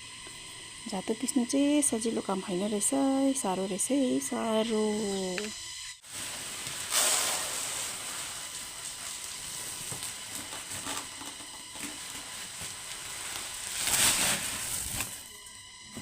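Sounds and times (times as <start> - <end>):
stone quern grinding grain: 6.2 - 15.5.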